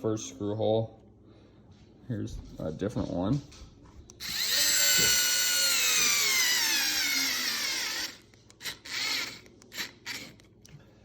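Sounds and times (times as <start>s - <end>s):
cordless screwdriver whining: 4.2s - 10.5s.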